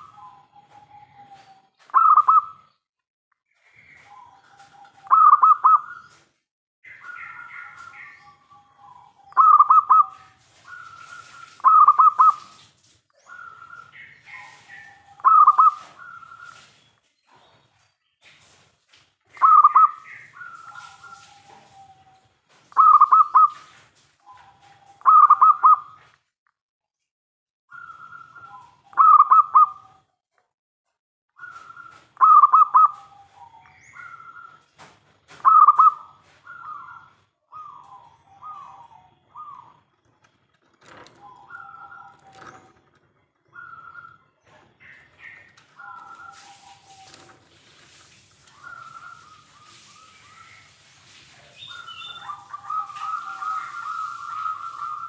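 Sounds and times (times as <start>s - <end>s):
dove cooing: 0.0s - 2.7s, 3.9s - 6.2s, 6.9s - 12.5s, 13.2s - 16.7s, 19.3s - 26.0s, 27.7s - 30.1s, 31.4s - 34.6s, 35.4s - 40.0s, 40.9s - 47.4s, 48.5s - 50.3s, 51.6s - 55.0s.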